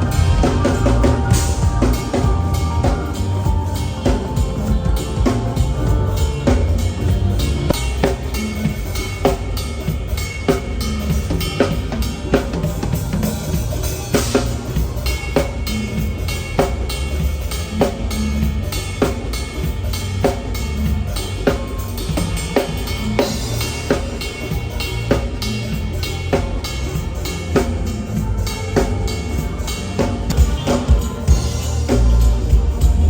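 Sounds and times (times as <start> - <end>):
heavy bass line: 0.0 - 9.7, 22.0 - 33.0
drum kit hits: 0.0 - 33.0
live band groove: 0.0 - 33.0.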